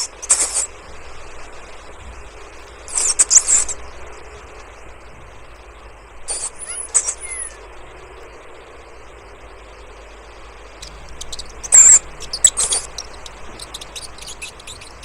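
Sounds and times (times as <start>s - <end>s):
background hiss: 10.8s - 15.0s
rodent squeaking: 10.8s - 15.0s.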